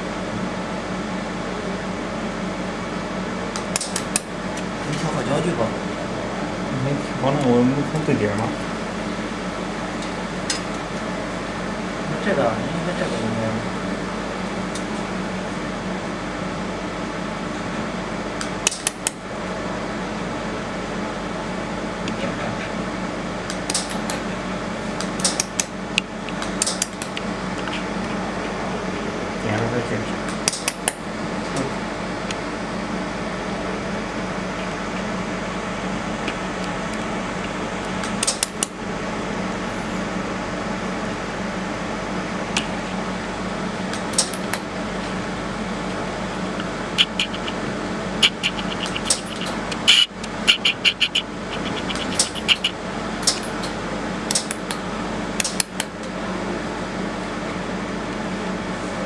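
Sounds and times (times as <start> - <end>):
cooling fan hum: 0.0 - 59.0
sharp clicks and ticks: 46.6 - 47.6, 48.2 - 54.8.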